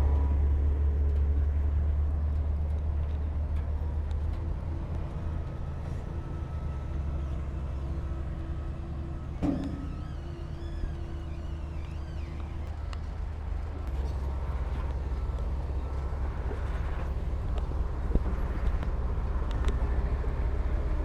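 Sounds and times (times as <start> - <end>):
heavy diesel engine rumbling: 0.0 - 21.0
short knock: 9.4 - 10.1.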